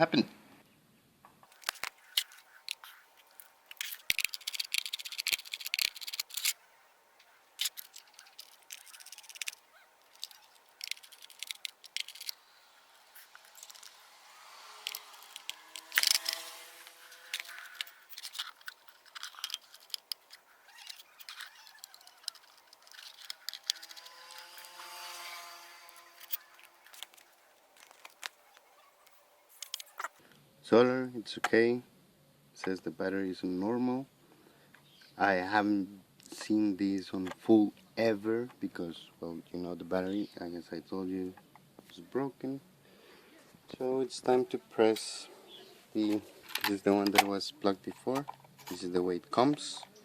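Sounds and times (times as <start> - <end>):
plastic and metal clicks and rattles: 1.5 - 6.6, 7.6 - 12.4, 13.4 - 14.0, 14.8 - 25.1, 25.8 - 30.2.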